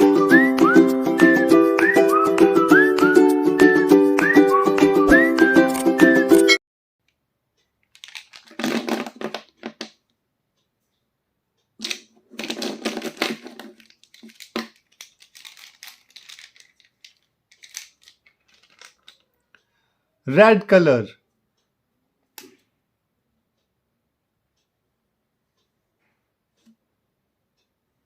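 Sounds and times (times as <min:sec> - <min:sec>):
small clicks and crackles: 0:07.8 - 0:08.6, 0:11.9 - 0:19.6.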